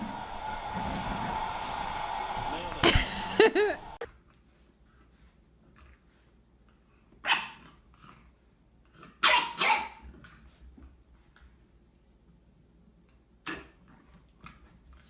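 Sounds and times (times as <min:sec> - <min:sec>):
dog barking: 0:07.2 - 0:07.6, 0:09.2 - 0:10.0.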